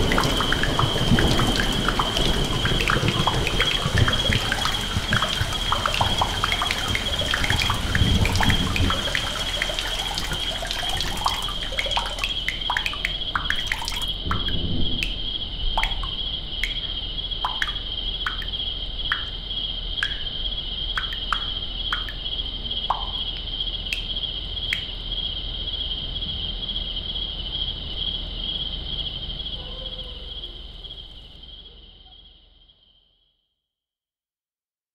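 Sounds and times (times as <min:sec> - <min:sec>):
water dripping and trickling: 0:00.0 - 0:25.0
crickets chirping: 0:00.0 - 0:33.6.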